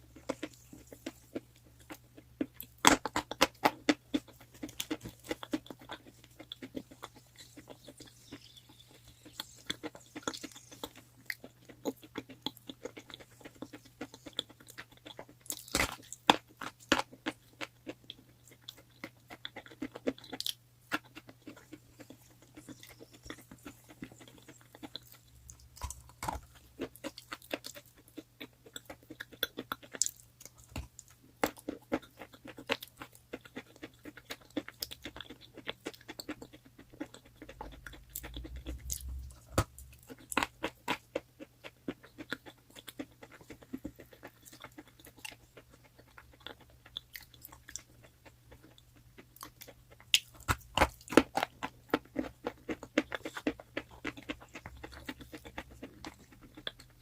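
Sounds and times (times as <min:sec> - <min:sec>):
chalk crunching while chewed: 0:00.0 - 0:57.0.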